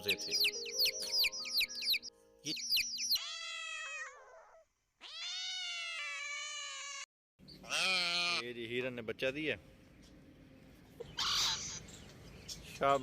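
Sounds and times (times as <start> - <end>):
chicks cheeping: 0.0 - 3.3
young mammal crying: 3.2 - 7.0, 7.6 - 8.4, 11.1 - 11.8.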